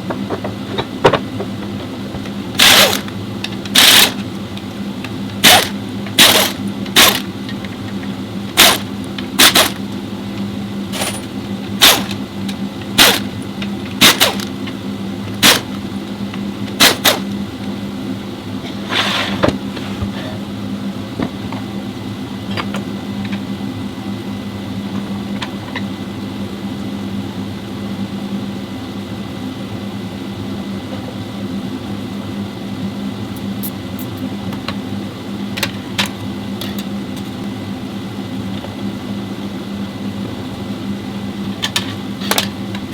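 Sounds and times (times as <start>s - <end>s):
machine humming: 0.0s - 25.4s.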